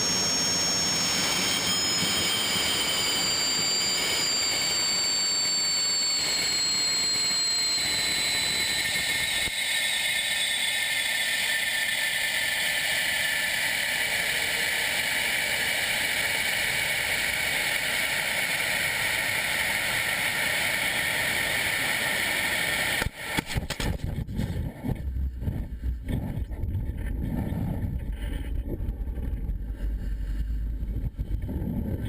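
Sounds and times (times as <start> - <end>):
whistling tones falling in pitch: 0.2 - 11.0
gusty wind buffeting: 23.8 - 32.0.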